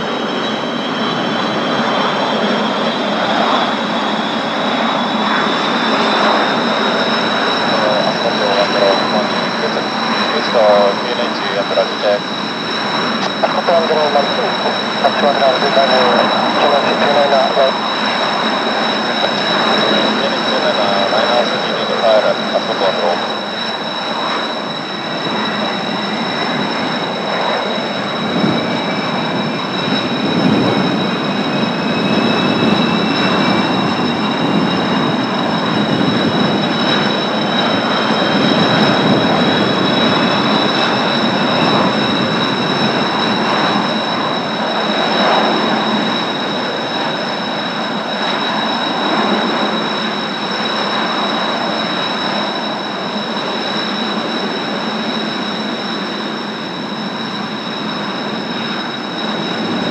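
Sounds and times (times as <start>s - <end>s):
jet engines whining: 0.0s - 59.9s
wind gusts on microphone: 24.2s - 50.2s.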